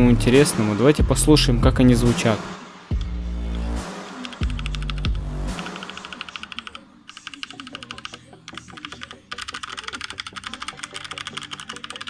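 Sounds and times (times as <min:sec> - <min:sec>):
mechanical keyboard typing: 0:03.0 - 0:12.0.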